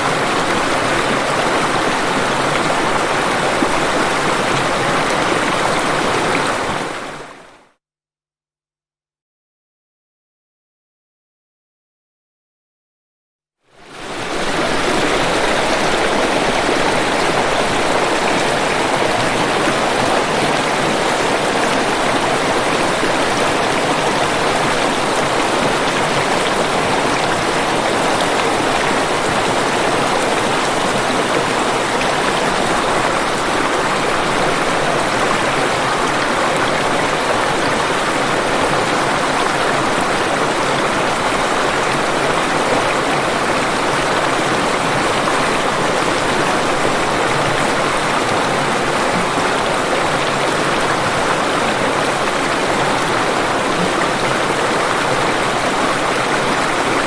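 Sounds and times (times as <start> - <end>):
waterfall rushing: 0.0 - 7.6, 13.8 - 57.0.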